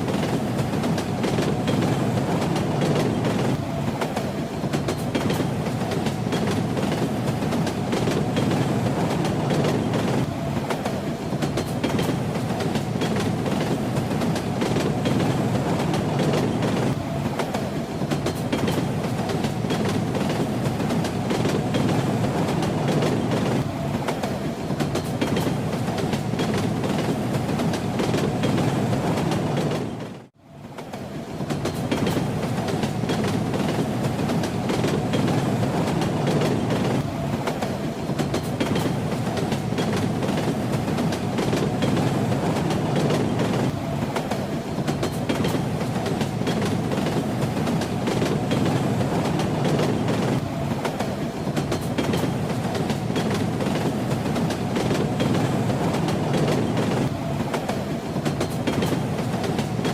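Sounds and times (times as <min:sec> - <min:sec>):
train wheels clacking over rails: 0:00.0 - 0:59.9.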